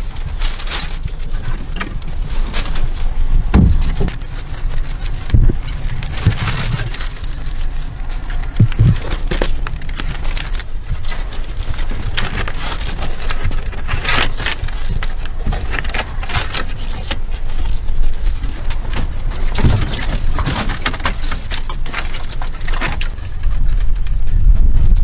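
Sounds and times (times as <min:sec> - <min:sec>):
crackling and scraping: 0:00.0 - 0:25.0
low rumble: 0:00.0 - 0:25.0
dull thumps: 0:01.1 - 0:16.5.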